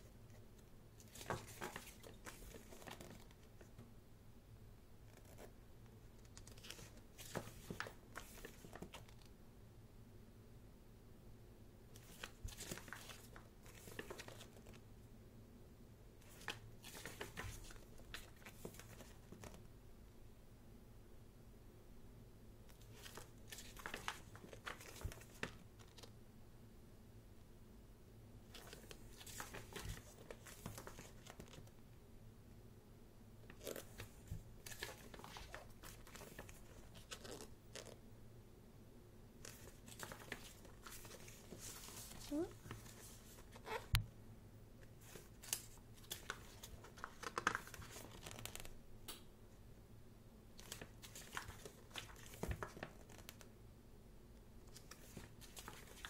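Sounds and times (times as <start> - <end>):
book pages turning: 1.0 - 3.5, 6.2 - 9.2, 12.0 - 14.8, 16.2 - 19.6, 22.7 - 26.1, 28.5 - 31.7, 33.5 - 38.0, 39.4 - 44.0, 45.0 - 48.7, 50.6 - 53.5, 54.7 - 56.0.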